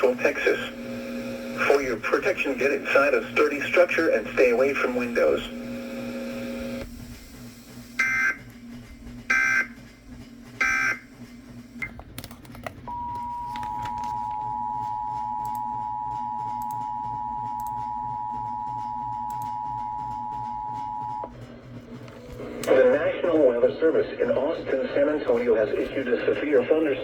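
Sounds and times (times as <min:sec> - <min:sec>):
two-tone attention signal: 0:08.0 - 0:08.4, 0:10.6 - 0:11.0.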